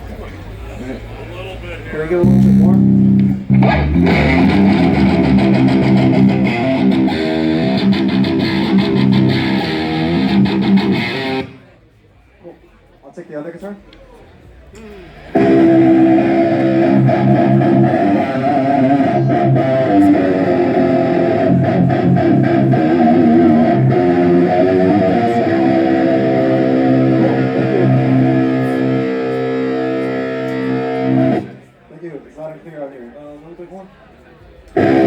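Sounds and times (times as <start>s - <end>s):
electric guitar chords through amplifier: 2.2s - 11.6s, 15.4s - 31.6s, 34.8s - 35.0s.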